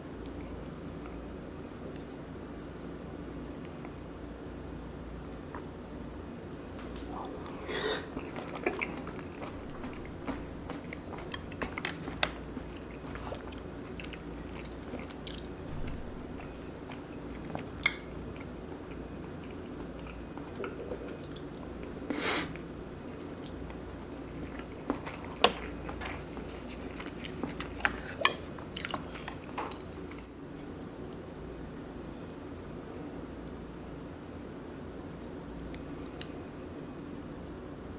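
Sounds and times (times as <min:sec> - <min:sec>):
close chewing and biting: 0:07.0 - 0:22.0, 0:23.2 - 0:31.2.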